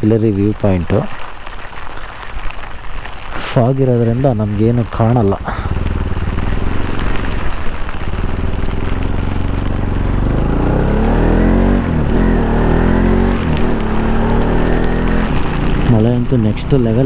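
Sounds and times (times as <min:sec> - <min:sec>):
motorcycle engine accelerating: 0:04.9 - 0:17.0.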